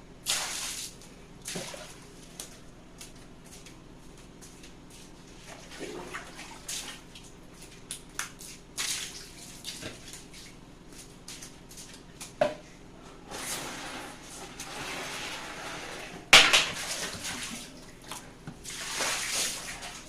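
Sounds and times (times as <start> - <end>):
water splashing and dripping: 16.7 - 20.0.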